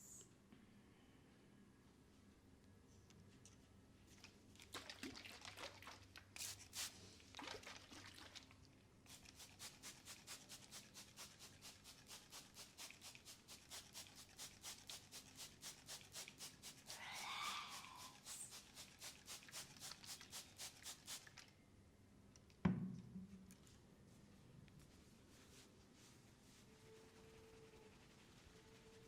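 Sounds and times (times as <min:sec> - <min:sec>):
oiled hands massaging skin: 0:09.1 - 0:21.4, 0:24.8 - 0:29.0.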